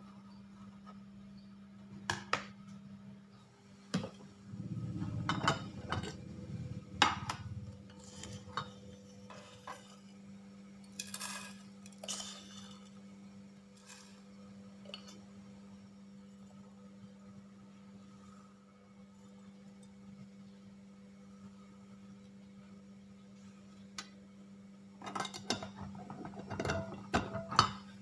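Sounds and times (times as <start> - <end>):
steady low hum: 0.0 - 28.0
dishes and utensils clinking: 25.0 - 27.9.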